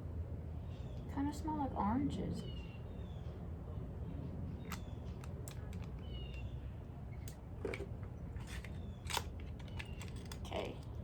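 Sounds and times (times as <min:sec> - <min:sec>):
clicks and taps of small items: 0:04.7 - 0:06.5.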